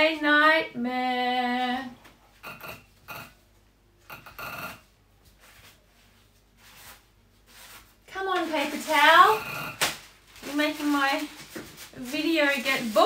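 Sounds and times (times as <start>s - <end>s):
paper towel wiping a surface: 5.4s - 9.4s, 10.5s - 13.0s.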